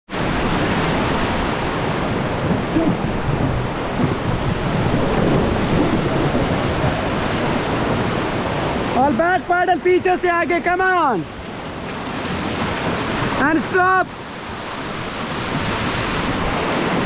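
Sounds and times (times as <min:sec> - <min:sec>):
turbulent river water rushing: 0:00.1 - 0:17.0
wind buffeting microphone: 0:01.0 - 0:09.0, 0:14.2 - 0:17.0.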